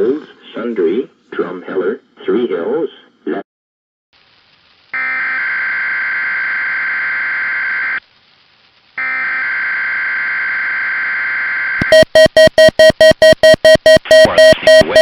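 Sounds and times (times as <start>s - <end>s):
rapid loud beeping: 11.5s - 15.0s
electronic alert tones: 11.8s - 15.0s.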